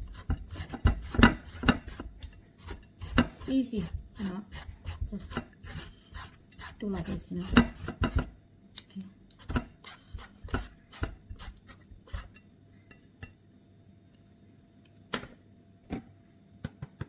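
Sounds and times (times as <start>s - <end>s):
knife chopping papaya: 0.0s - 8.3s.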